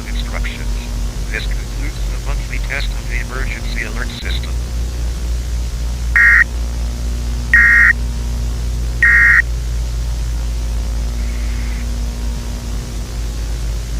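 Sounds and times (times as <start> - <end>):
broadcast hum and hiss: 0.0 - 13.9
digital squawks: 6.2 - 6.4, 7.6 - 7.9, 9.0 - 9.4.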